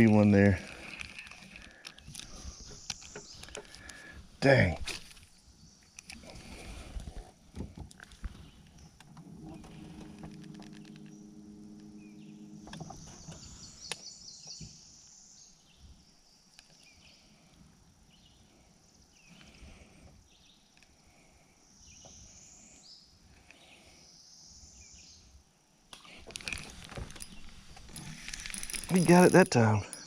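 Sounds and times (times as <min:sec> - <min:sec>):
low steady hum: 0:09.1 - 0:14.2.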